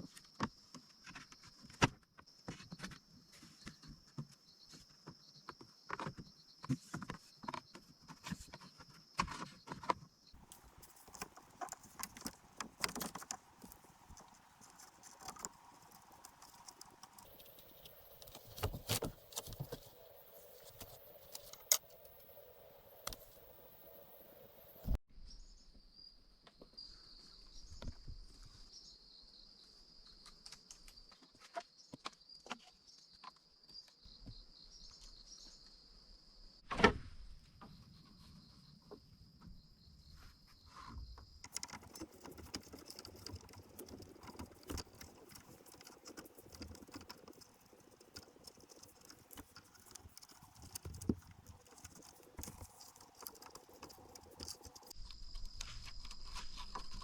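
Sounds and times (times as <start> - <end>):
jungle insects droning: 10.3 - 25.0, 37.7 - 57.0.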